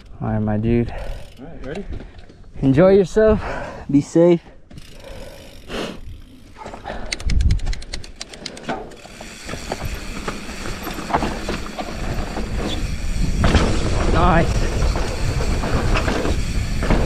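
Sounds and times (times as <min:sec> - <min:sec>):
bike freewheel clicking: 0:00.8 - 0:01.8, 0:04.7 - 0:17.0
bike knocking over trail: 0:08.9 - 0:17.0
tyres rushing on dirt: 0:09.0 - 0:17.0.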